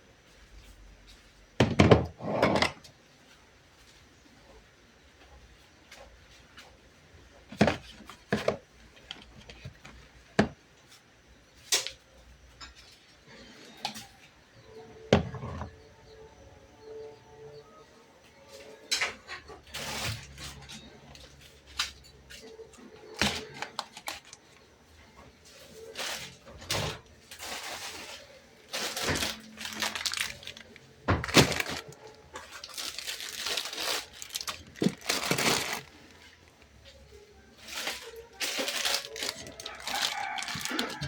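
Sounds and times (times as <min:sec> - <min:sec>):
rustling and scraping: 0:18.5 - 0:41.0.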